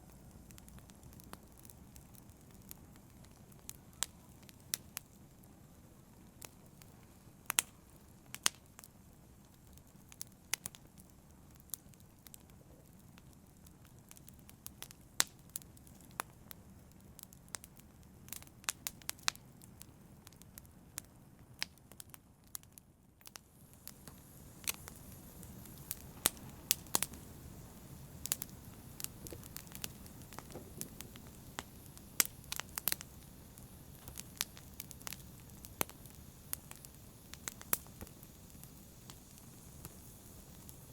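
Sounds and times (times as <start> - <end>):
wood fire crackling and popping: 0.0 - 40.9
soft rush of flames: 23.3 - 40.9.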